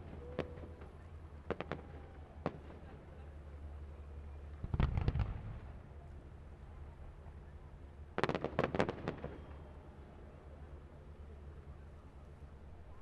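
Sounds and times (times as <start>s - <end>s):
fireworks cracks and bangs: 4.7s - 5.6s, 8.2s - 9.4s.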